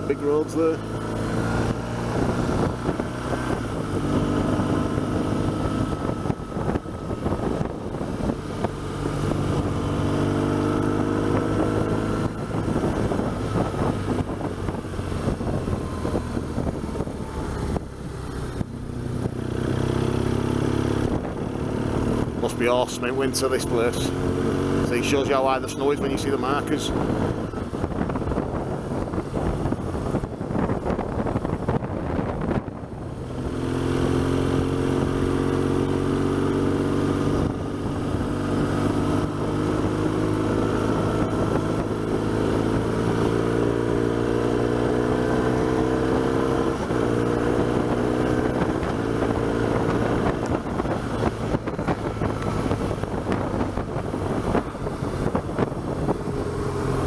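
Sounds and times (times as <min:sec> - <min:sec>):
motorcycle engine running: 0:00.0 - 0:57.0
wind rushing: 0:46.9 - 0:57.0.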